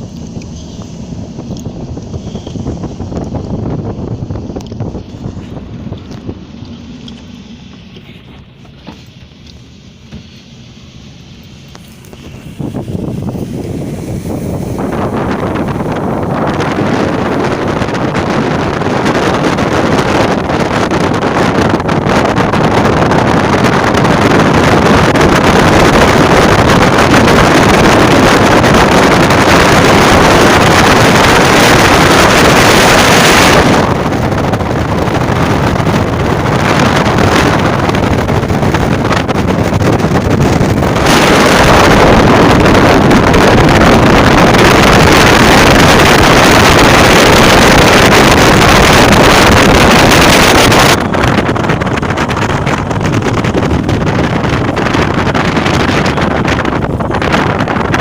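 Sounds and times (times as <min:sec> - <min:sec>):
wind buffeting the microphone: 0:00.0 - 0:58.0.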